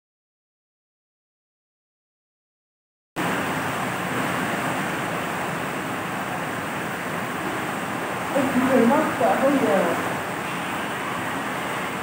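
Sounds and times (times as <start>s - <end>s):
floodwater rushing: 3.2s - 12.0s
heavy rain: 3.2s - 12.0s.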